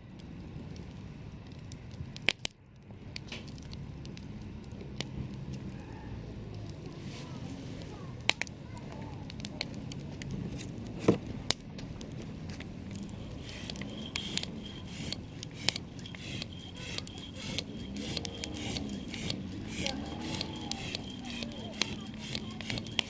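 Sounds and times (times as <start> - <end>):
campfire crackling and popping: 0.1 - 7.0, 7.7 - 23.0
high-pitched pulsing: 13.1 - 23.0.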